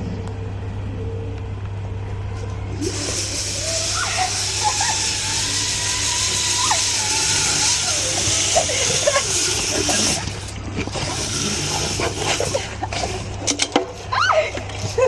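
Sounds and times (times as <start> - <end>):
pulley wheels whining: 2.7 - 15.0
zip line trolley rushing hiss: 2.8 - 13.5.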